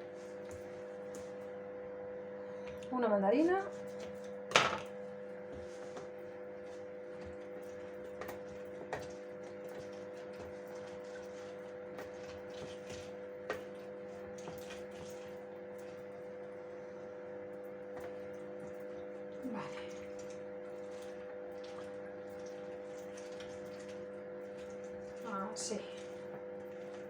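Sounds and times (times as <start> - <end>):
electrical hum: 0.0 - 27.0
juice trickling: 18.4 - 27.0.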